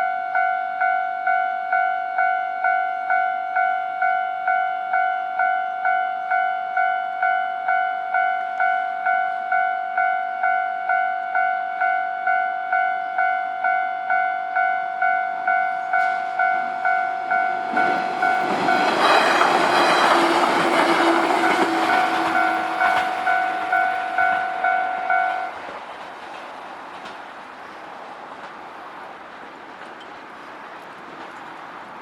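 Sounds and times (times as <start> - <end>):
train wheels rumbling and clattering: 15.8 - 32.0
level crossing bell ringing: 21.3 - 25.6.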